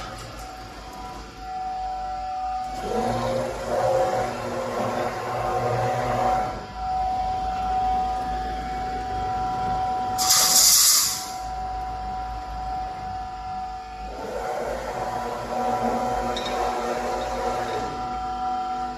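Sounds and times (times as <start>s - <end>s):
welding machine humming: 0.0s - 18.9s
compressed air hiss: 10.2s - 11.4s.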